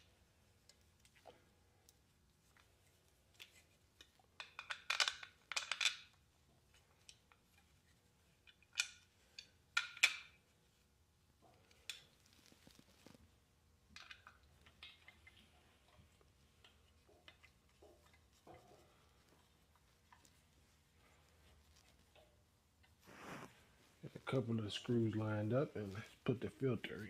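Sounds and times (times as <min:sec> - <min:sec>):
metal parts and screws clicking: 0:04.4 - 0:06.1.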